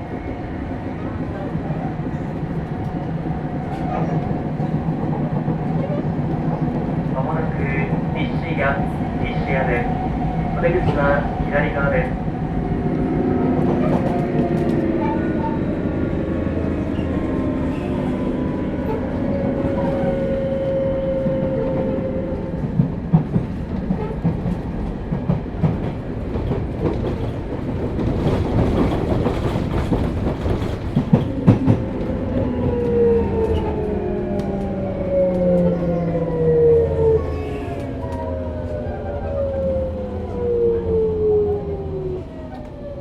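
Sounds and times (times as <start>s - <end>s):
train wheels clacking on rail joints: 22.6s - 34.7s.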